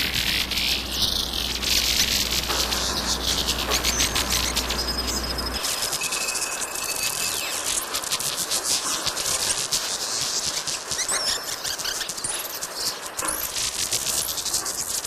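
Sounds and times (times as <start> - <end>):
high-pitched clicking and chirring: 0.0 - 15.0
rising whistles: 2.7 - 7.7
whistle: 3.7 - 7.9.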